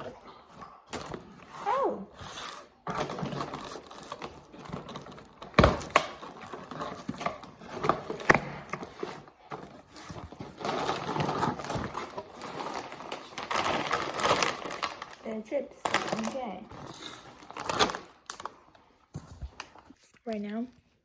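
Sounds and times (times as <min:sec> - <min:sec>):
package rustling: 0:02.2 - 0:20.0.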